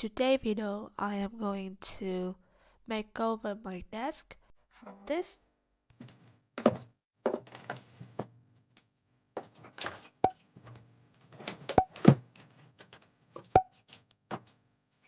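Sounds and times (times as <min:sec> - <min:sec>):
small knocks and clatters: 0:05.9 - 0:08.3, 0:09.4 - 0:14.6.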